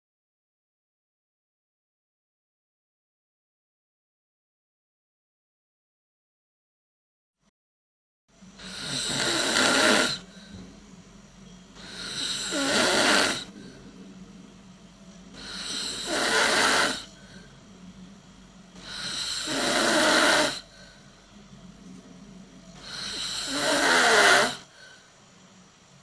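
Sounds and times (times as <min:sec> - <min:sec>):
faint steady hum: 0:08.3 - 0:26.0
person snoring: 0:08.6 - 0:10.5, 0:11.8 - 0:13.8, 0:15.4 - 0:17.6, 0:18.8 - 0:21.0, 0:22.8 - 0:25.1.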